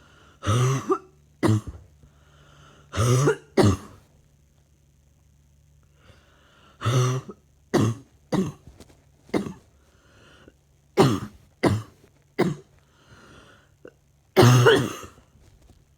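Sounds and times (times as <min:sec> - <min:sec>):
person coughing: 0:00.4 - 0:01.9, 0:02.9 - 0:04.0, 0:06.8 - 0:08.7, 0:09.3 - 0:09.7, 0:11.0 - 0:12.7, 0:14.4 - 0:15.2.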